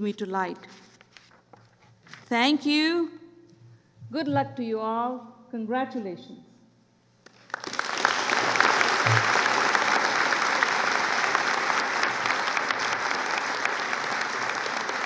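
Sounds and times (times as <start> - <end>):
audience applauding: 7.2 - 15.0.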